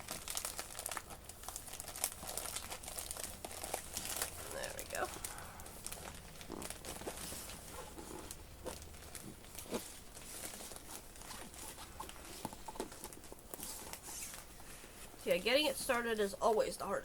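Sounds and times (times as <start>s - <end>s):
hands rustling plastic packaging: 0.0s - 16.2s
canvas being rolled up: 1.7s - 15.3s.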